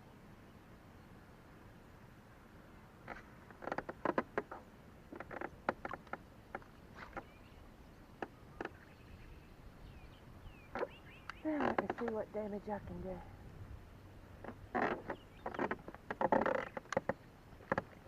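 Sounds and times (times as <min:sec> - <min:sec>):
light clicks and knocks: 0:10.8 - 0:12.8, 0:14.4 - 0:18.0.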